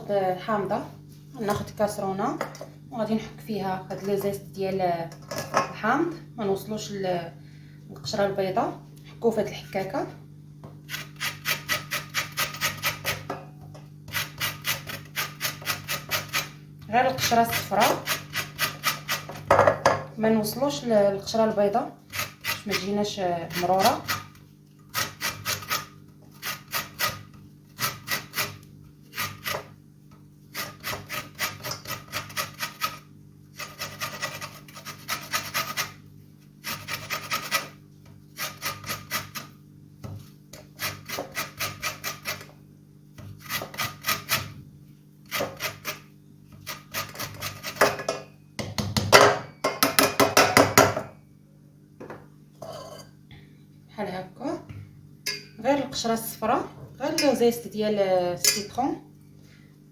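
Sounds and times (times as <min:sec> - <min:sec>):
lemon rasping on a hand grater: 0:10.9 - 0:13.3, 0:14.1 - 0:19.4, 0:21.7 - 0:29.8, 0:30.4 - 0:36.0, 0:36.6 - 0:37.8, 0:38.4 - 0:39.6, 0:40.6 - 0:42.6, 0:43.3 - 0:44.6, 0:45.2 - 0:47.9.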